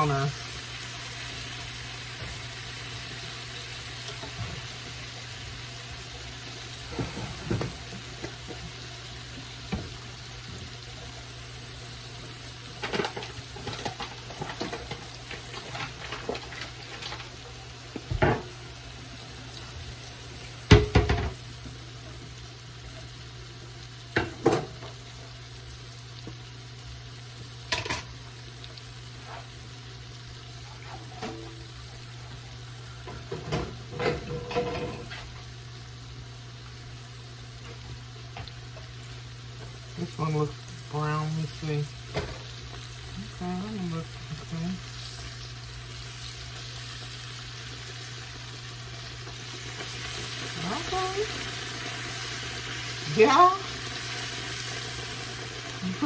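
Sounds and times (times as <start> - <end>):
mushrooms sizzling in a pan: 0.0 - 56.0
utensil knocking on pan: 20.7 - 21.4.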